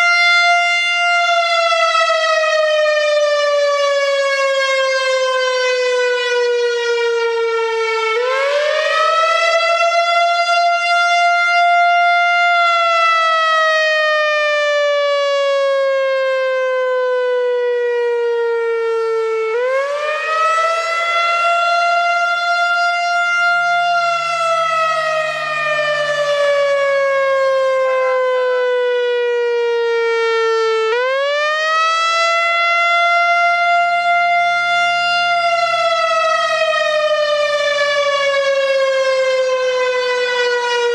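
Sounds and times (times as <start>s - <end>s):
warning siren wailing: 0.0s - 40.9s.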